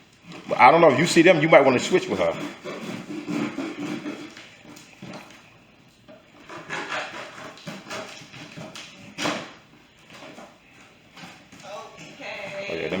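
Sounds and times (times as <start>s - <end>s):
cardboard package rustling and scraping: 0.0s - 13.0s.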